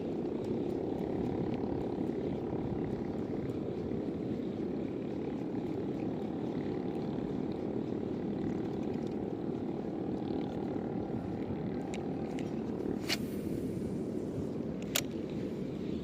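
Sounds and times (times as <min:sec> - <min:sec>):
faint steady hum: 0:00.0 - 0:16.0
low rushing noise: 0:12.6 - 0:16.0.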